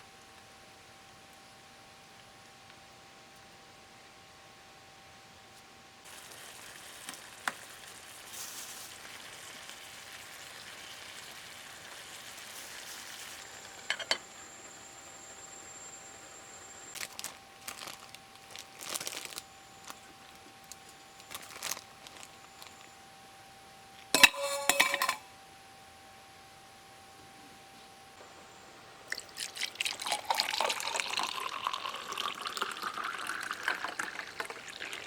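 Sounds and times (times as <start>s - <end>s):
food sizzling in a pan: 6.1s - 15.7s
cookware clicking and knocking: 13.9s - 14.2s, 24.2s - 25.2s.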